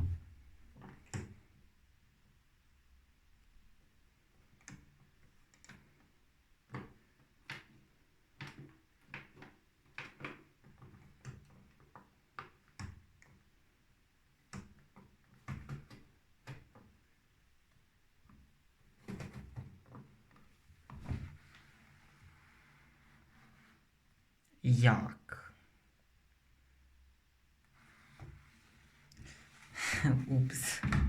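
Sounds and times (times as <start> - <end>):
washing machine clicks and knocks: 30.7 - 31.0.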